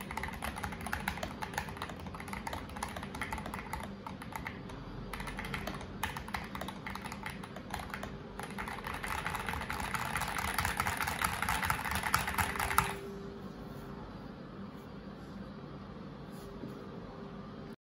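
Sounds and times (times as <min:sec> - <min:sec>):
mechanical keyboard typing: 0:00.0 - 0:13.0.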